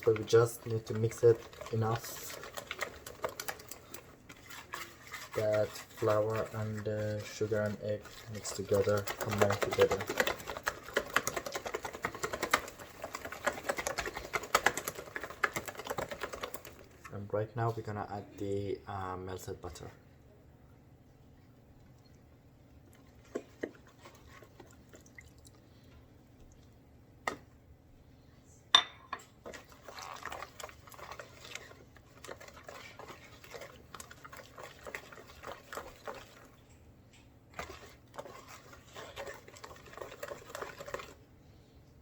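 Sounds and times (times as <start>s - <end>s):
batter stirred in bowl: 0.0s - 20.0s, 20.9s - 28.0s, 28.7s - 42.0s
utensil clinking on bowl: 28.7s - 31.6s.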